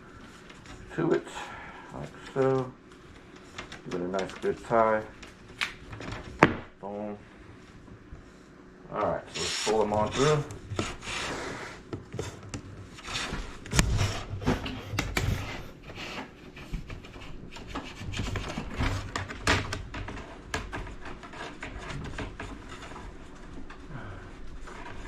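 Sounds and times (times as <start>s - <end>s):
cable scraping through wall: 9.2s - 25.0s.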